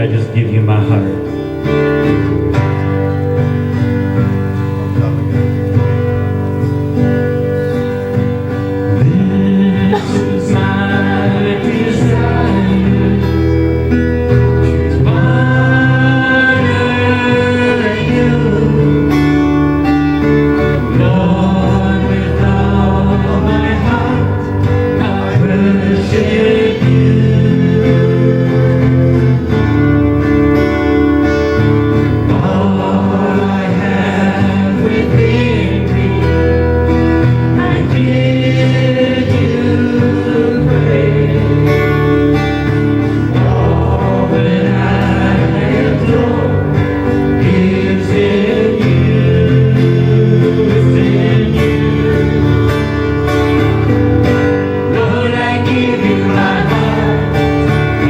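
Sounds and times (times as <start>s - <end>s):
band playing sustained chords: 0.0s - 58.0s
person singing: 8.9s - 14.0s, 14.7s - 19.8s, 20.6s - 29.6s, 32.2s - 52.7s, 54.6s - 58.0s.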